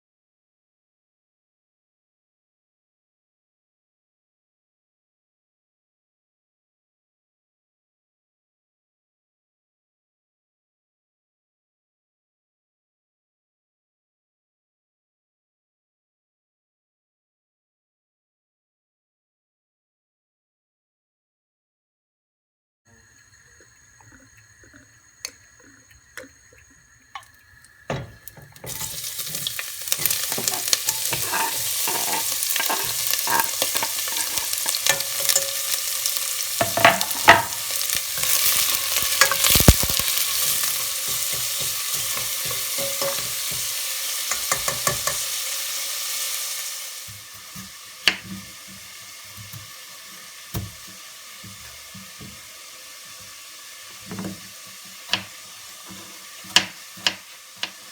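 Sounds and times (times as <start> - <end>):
food sizzling in a pan: 23.0 - 57.9
utensil stirring clicks and scrapes: 23.6 - 45.3.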